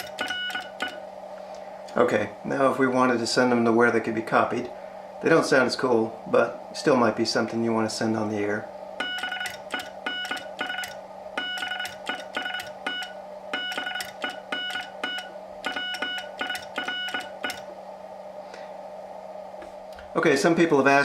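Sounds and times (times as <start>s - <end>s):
morse code tone: 0.0s - 1.0s, 9.0s - 17.6s.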